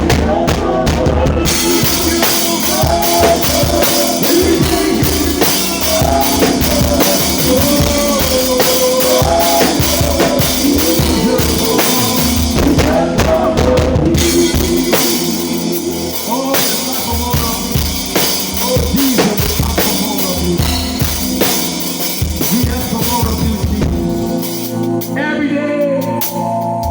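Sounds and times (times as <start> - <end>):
drum kit with rimshots: 0.0 - 26.9
worship band playing: 0.0 - 26.9.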